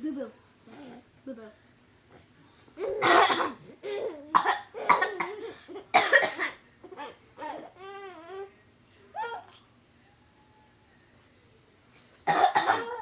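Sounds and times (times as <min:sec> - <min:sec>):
harsh coughs: 0:02.9 - 0:06.6, 0:12.3 - 0:13.0.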